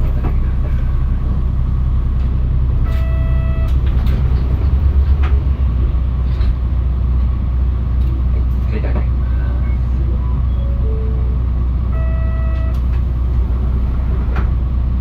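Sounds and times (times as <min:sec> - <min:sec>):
bus diesel engine droning: 0:00.0 - 0:15.0
short electronic beep: 0:02.9 - 0:03.8, 0:11.9 - 0:12.8
rattles and clicks: 0:03.7 - 0:07.4.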